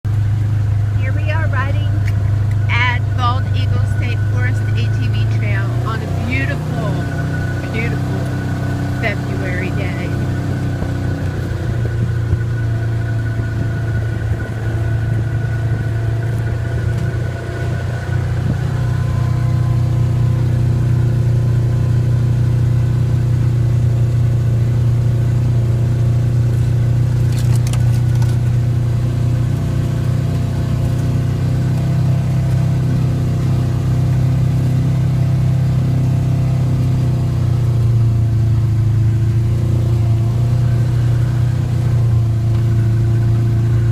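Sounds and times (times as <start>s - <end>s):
atv engine running: 0.0s - 43.9s.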